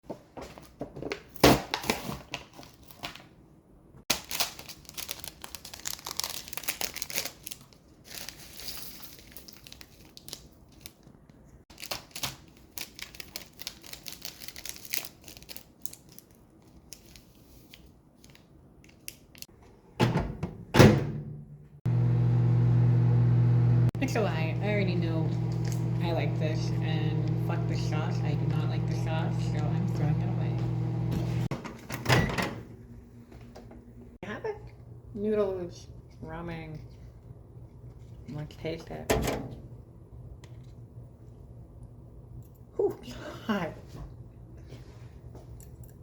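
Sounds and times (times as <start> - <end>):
plastic packaging crinkling: 4.1 - 11.1, 11.7 - 18.4.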